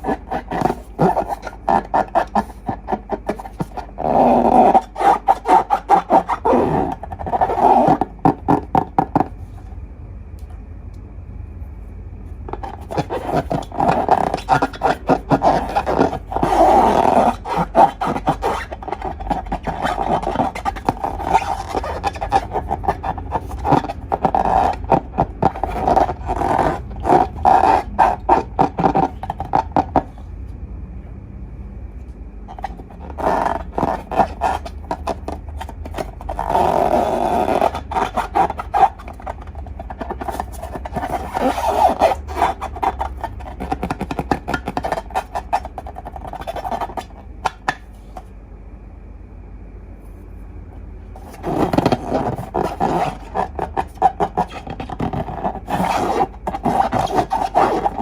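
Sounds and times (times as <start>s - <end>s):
slime squelching by hand: 12.5s - 30.2s.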